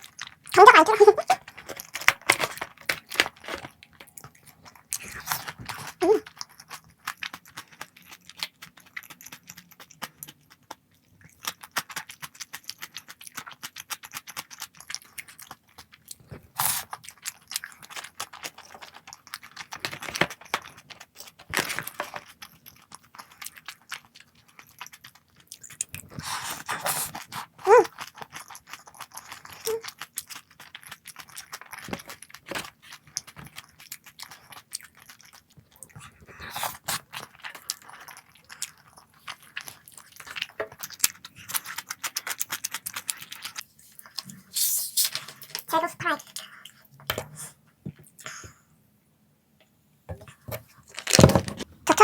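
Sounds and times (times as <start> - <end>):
chewing and biting: 0.0 - 44.4
slurps and crunches: 0.0 - 48.6.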